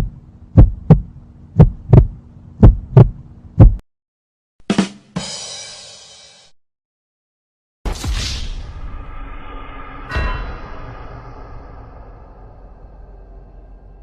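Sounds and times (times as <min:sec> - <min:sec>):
heartbeat thumps: 0:00.0 - 0:03.8
hissing crash: 0:07.9 - 0:13.1.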